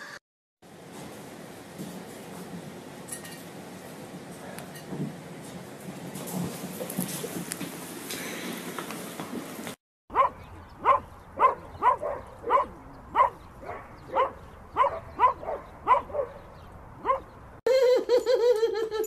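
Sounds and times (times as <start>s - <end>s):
dog barking: 10.1s - 17.3s.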